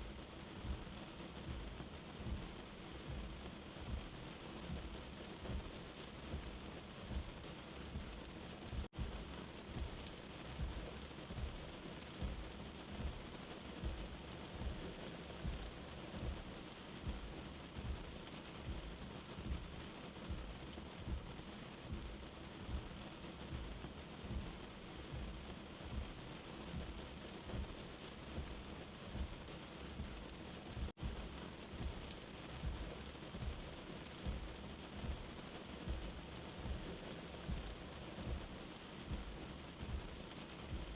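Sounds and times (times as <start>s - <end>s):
steady rain falling: 0.0s - 40.9s
soft low thuds: 0.6s - 40.9s.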